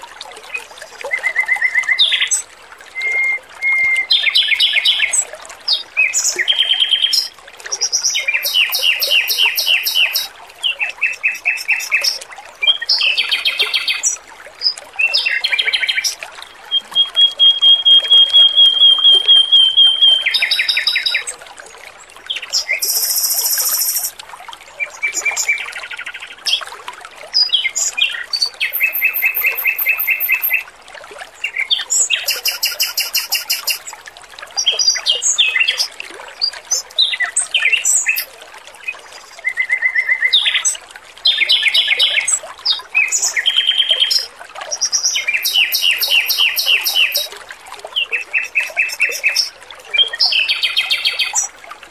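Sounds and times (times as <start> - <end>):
running water trickling: 0.0 - 51.9
bird singing trills: 8.1 - 10.3, 15.2 - 21.3, 22.6 - 24.1, 28.6 - 30.6, 31.7 - 33.9, 45.1 - 47.3, 48.2 - 51.5.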